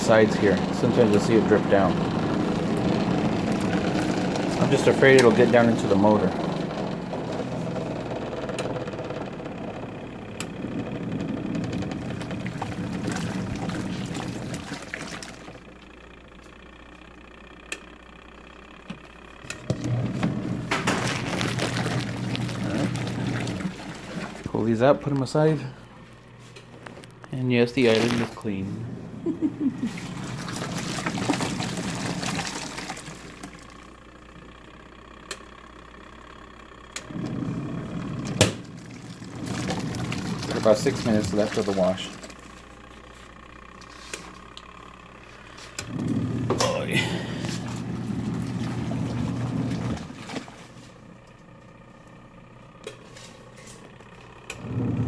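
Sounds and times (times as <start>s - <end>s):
water draining: 0.0s - 15.8s, 19.5s - 24.6s, 27.8s - 34.0s, 37.0s - 42.6s, 45.8s - 51.4s
low hum: 0.0s - 55.0s
spin dryer running: 0.0s - 55.0s.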